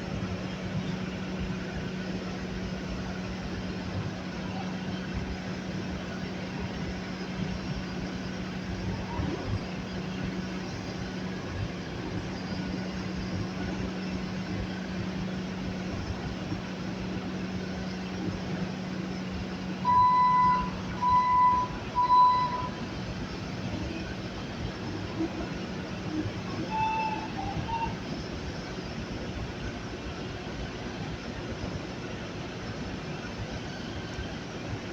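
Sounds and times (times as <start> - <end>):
skid steer engine hum: 0.0 - 34.8
short loud beeps: 19.8 - 22.8.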